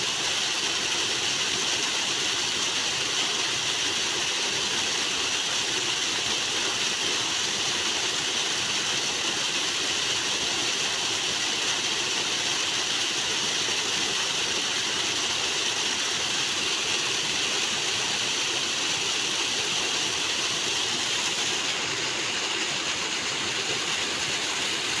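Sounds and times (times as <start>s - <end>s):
water rushing: 9.6s - 25.0s.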